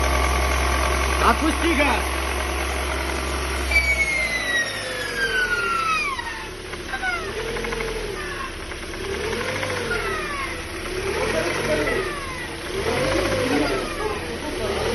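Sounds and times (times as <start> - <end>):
transmission whine: 3.6 - 8.2
falling high whistle: 3.7 - 6.6.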